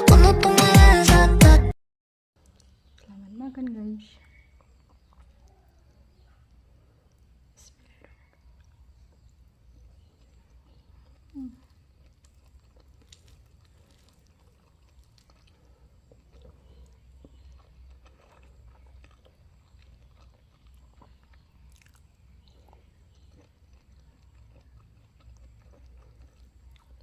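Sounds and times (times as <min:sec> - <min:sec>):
chewing with wet clicks: 0:02.4 - 0:27.0.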